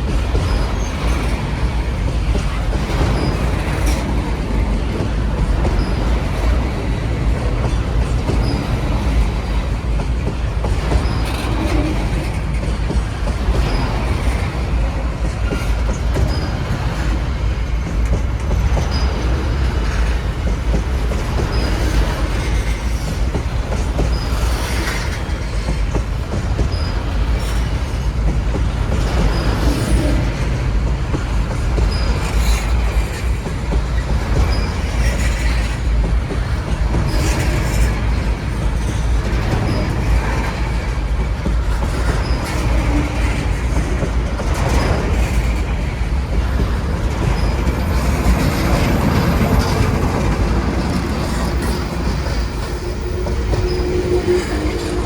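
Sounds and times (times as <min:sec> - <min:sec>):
train rumbling past: 0:00.0 - 0:55.0
high wheel squeaks: 0:05.4 - 0:09.6, 0:44.6 - 0:55.0.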